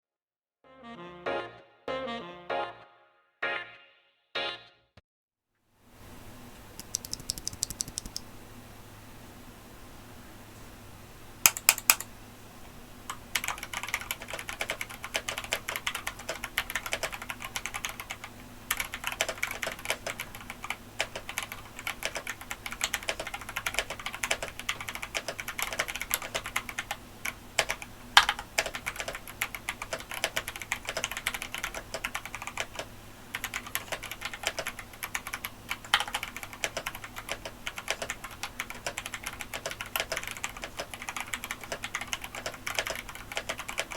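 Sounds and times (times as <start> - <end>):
mechanical keyboard typing: 6.8 - 8.3, 11.5 - 12.1, 13.1 - 43.9.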